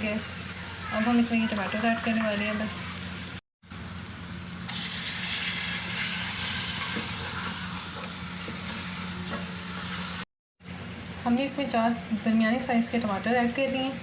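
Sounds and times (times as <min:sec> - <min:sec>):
chicken sizzling in hot oil: 0:00.0 - 0:10.3.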